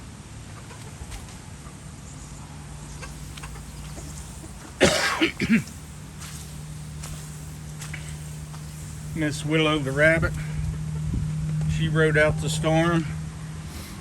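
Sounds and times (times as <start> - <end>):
man clearing throat: 4.8 - 5.8
man coughing: 4.8 - 5.8.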